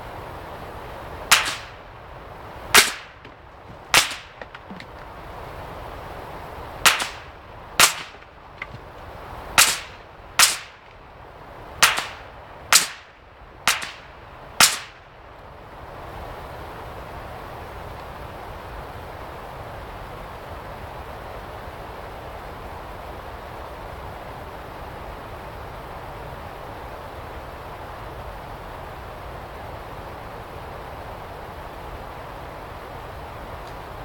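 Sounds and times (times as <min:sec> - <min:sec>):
rifle shots with echo: 0:01.3 - 0:01.8, 0:02.7 - 0:04.9, 0:06.8 - 0:08.8, 0:09.6 - 0:10.9, 0:11.8 - 0:13.1, 0:13.7 - 0:15.0.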